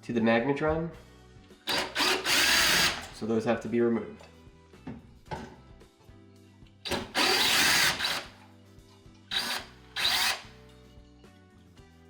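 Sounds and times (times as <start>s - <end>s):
power drill-driver backing out screws: 1.7s - 3.2s, 6.9s - 8.4s, 9.3s - 10.5s.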